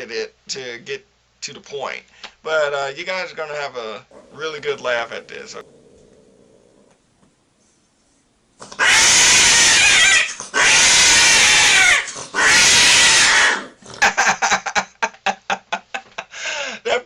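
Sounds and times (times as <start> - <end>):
cat yowling: 8.7 - 13.7.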